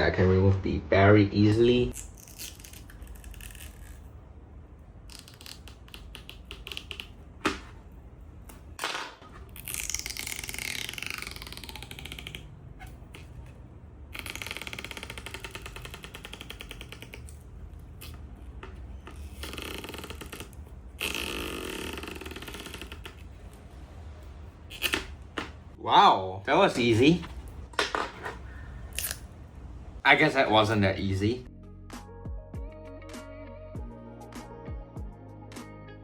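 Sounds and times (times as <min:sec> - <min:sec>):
adhesive strip crackling: 0:05.0 - 0:07.7.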